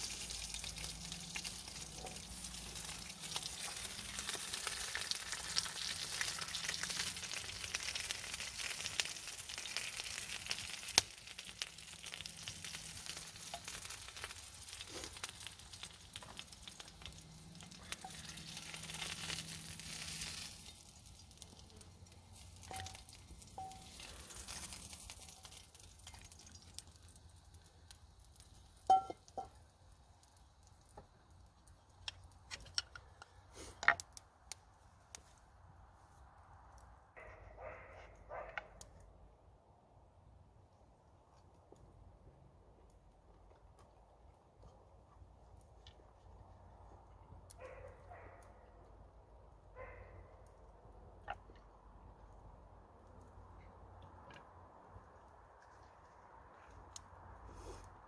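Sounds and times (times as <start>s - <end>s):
food sizzling in a frying pan: 0.0s - 29.7s.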